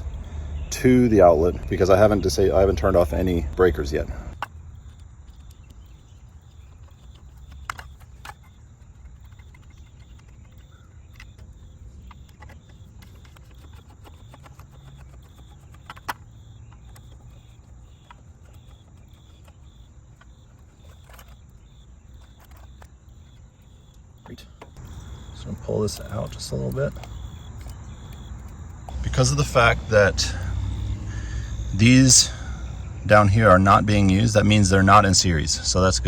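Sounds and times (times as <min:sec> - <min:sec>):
crickets chirping faintly: 0:00.0 - 0:36.0
low steady rumble: 0:24.0 - 0:36.0.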